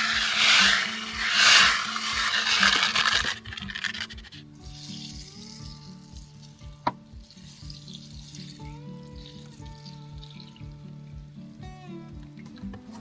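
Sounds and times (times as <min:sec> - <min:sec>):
loud hissing rush: 0:00.0 - 0:03.3
music with steady beat: 0:00.0 - 0:13.0.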